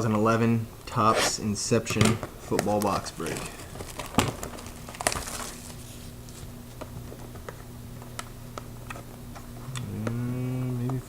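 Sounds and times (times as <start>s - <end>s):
steady low hum: 0.0s - 11.0s
packaging clicks and crinkles: 2.5s - 9.0s.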